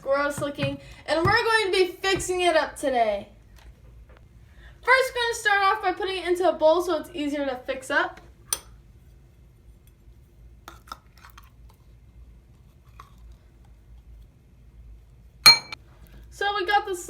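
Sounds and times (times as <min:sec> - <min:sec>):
bowl clinking: 0:15.5 - 0:15.8.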